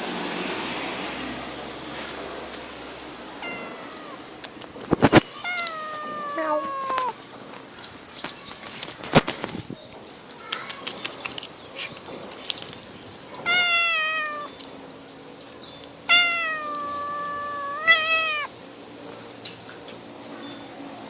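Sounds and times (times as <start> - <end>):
cat meowing: 3.4 - 4.3, 5.1 - 7.2, 13.4 - 14.6, 16.1 - 18.6.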